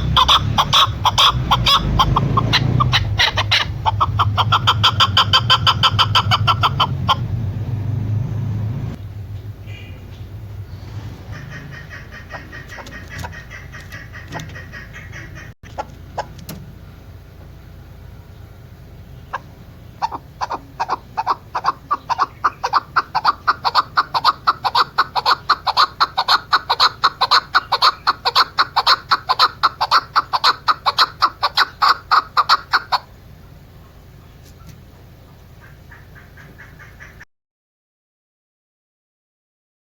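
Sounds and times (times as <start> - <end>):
partridge clucking calls: 0.0 - 7.5, 9.4 - 33.2, 33.8 - 37.3
low hum: 0.0 - 20.8.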